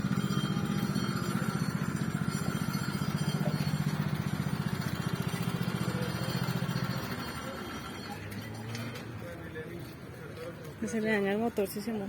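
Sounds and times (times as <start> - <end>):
vehicle engine pulsing: 0.0 - 9.4.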